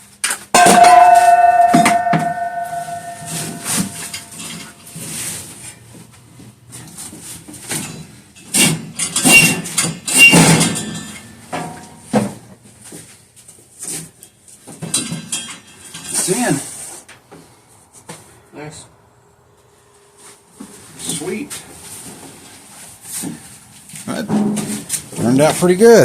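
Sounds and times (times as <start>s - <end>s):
knocks: 0.6s - 4.0s
ringing metal clang: 0.6s - 4.6s.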